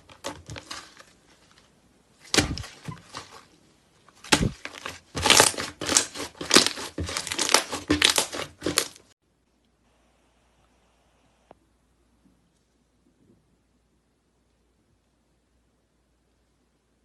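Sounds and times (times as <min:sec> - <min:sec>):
slime crackling and popping: 0:04.2 - 0:09.1.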